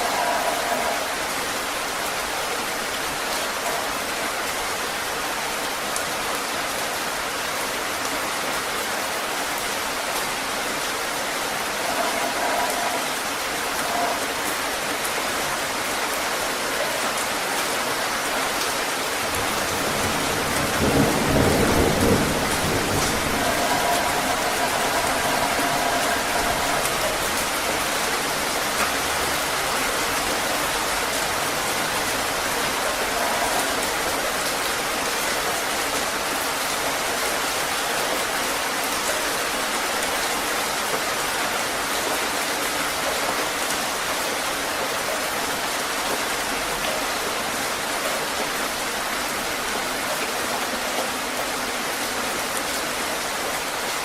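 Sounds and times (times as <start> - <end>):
heavy rain falling: 0.0 - 54.0
low thunder roll: 19.4 - 27.2.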